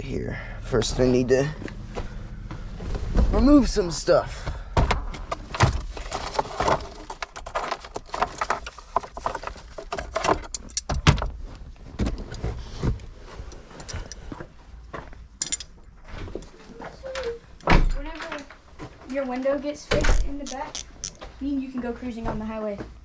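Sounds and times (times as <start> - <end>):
clicks and rattles of car parts: 4.7 - 11.3, 14.9 - 15.8.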